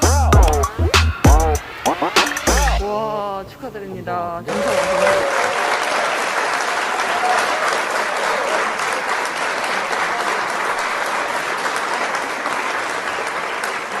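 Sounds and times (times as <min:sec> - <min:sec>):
people clapping: 0:00.0 - 0:01.4, 0:04.5 - 0:14.0.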